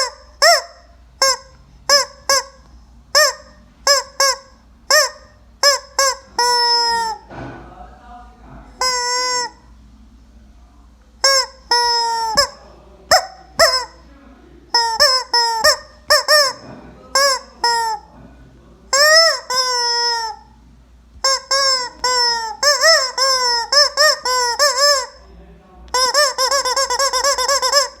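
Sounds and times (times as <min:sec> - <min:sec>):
rubber chicken toy squawking: 0:00.0 - 0:07.3, 0:08.8 - 0:09.7, 0:11.2 - 0:14.0, 0:14.7 - 0:18.1, 0:18.9 - 0:20.6, 0:21.2 - 0:25.2, 0:25.9 - 0:28.0.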